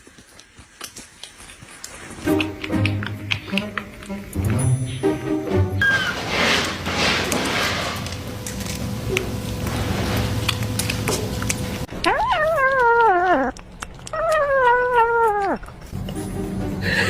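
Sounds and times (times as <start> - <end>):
cat meowing: 12.0 - 15.6.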